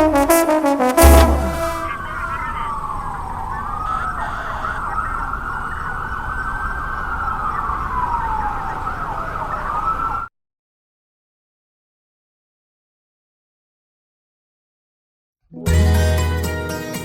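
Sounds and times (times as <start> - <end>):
siren wailing: 0.0 - 10.3.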